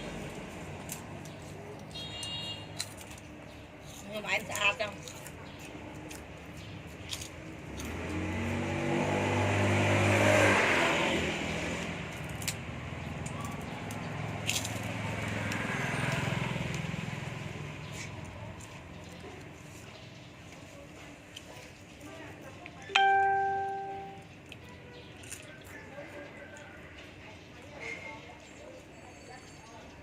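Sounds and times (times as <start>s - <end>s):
quieter vehicle passing: 7.6s - 19.7s
vehicle engine driving past: 7.9s - 13.1s.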